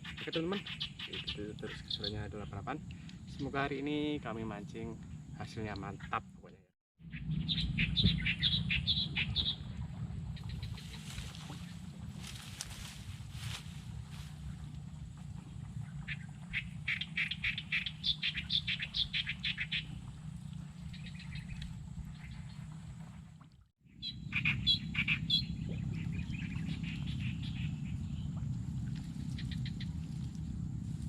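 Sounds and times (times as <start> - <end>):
steady low rumble: 7.0 - 31.0.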